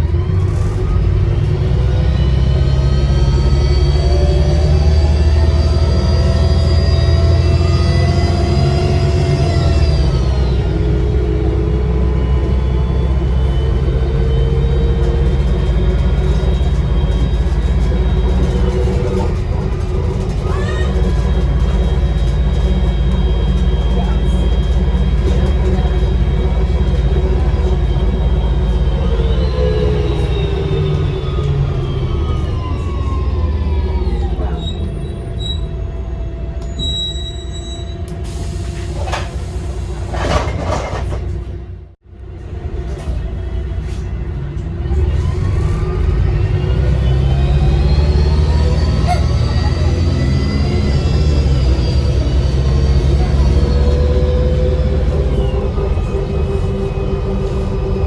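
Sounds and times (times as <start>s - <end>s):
bus engine drone: 0.0s - 58.0s
drivetrain whine: 0.0s - 58.0s.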